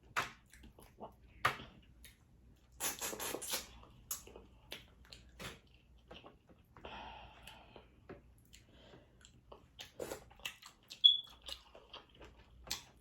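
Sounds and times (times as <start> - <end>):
wet chewing and smacking: 0.3 - 13.0.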